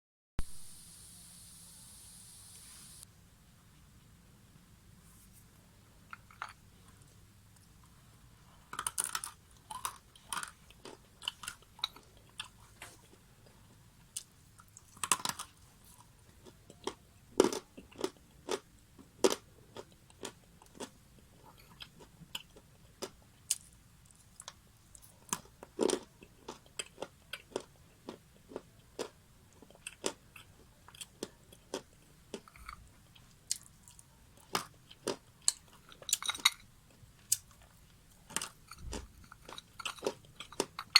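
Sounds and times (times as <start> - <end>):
crunchy chewing: 14.2 - 40.9.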